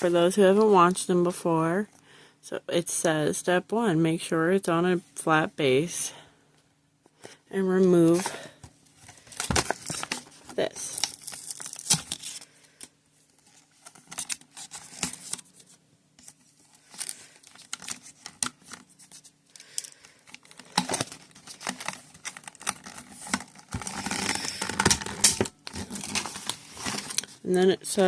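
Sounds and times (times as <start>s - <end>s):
plastic packaging crinkling and tearing: 9.1s - 12.8s, 13.4s - 27.5s.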